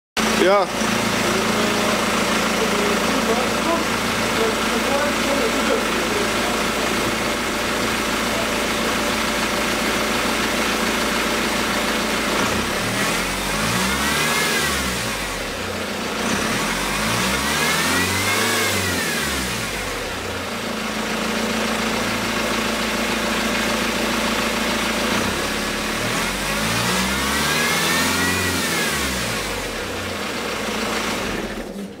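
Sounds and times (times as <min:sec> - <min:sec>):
car engine idling and revving: 0:00.2 - 0:32.0.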